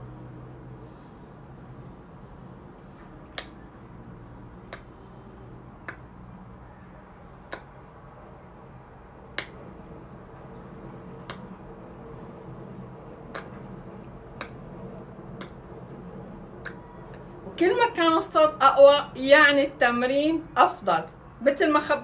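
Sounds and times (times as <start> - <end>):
tongue clicks: 2.6 - 17.3.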